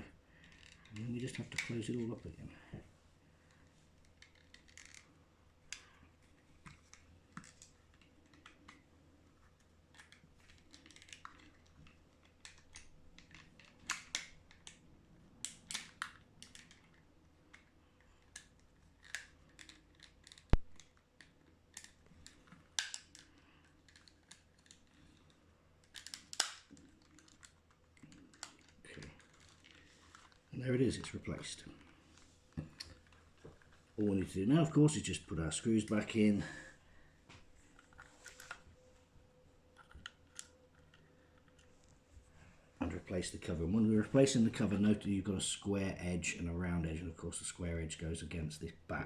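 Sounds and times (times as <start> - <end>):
plastic parts clicking and rattling: 0.4 - 1.9, 3.6 - 5.1, 9.6 - 14.8, 15.4 - 31.8, 37.7 - 38.6, 39.7 - 41.7.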